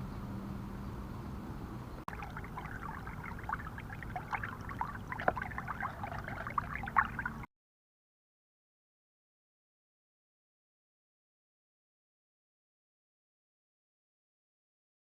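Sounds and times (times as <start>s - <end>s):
steady low hum: 0.0s - 7.5s
water splashing and trickling: 2.1s - 7.5s.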